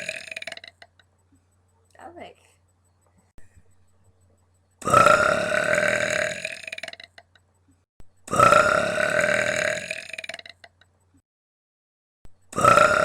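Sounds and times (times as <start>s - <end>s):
woman burping loudly: 0.0s - 0.8s, 4.8s - 7.1s, 8.3s - 10.6s, 12.6s - 13.0s.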